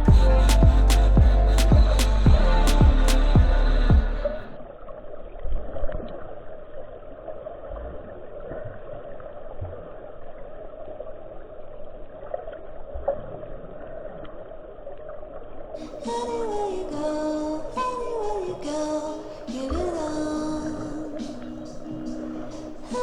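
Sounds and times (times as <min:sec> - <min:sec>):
low thumps: 0:00.0 - 0:04.3
steady hum: 0:00.0 - 0:04.6
muffled water sound: 0:00.0 - 0:23.0.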